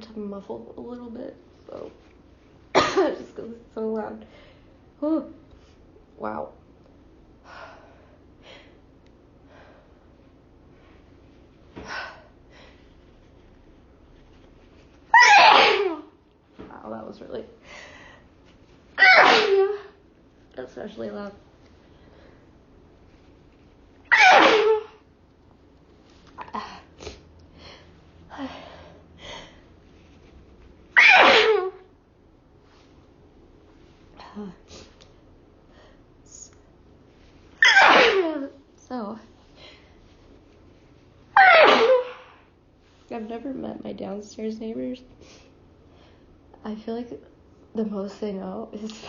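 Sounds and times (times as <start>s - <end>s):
woman sneezing: 2.8s - 3.3s, 15.1s - 16.1s, 19.0s - 20.0s, 24.1s - 25.0s, 31.0s - 31.8s, 37.6s - 38.4s, 41.4s - 42.3s.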